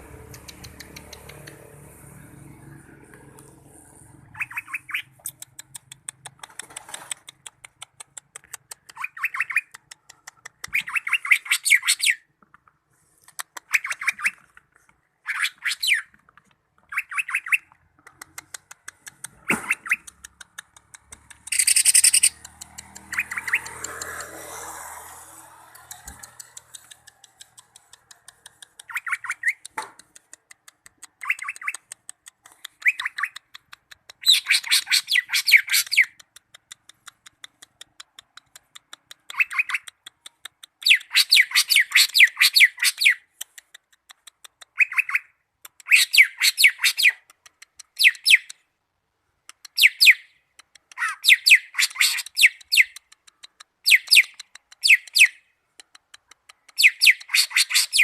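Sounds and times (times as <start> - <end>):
bird chattering song: 4.3 - 6.8, 8.8 - 12.3, 13.4 - 14.5, 15.2 - 16.2, 16.8 - 24.2, 25.7 - 29.8, 31.1 - 32.0, 32.6 - 36.2, 39.2 - 43.3, 44.6 - 48.6, 49.7 - 50.4, 51.0 - 55.5, 56.6 - 58.0.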